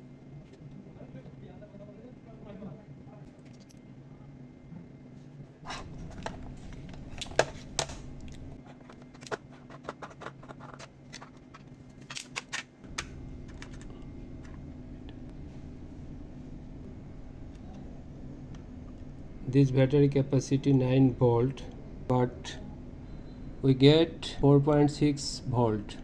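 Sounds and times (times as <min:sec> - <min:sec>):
low steady hum: 0:00.0 - 0:26.0
hands handling plastic multimeter: 0:06.1 - 0:14.6.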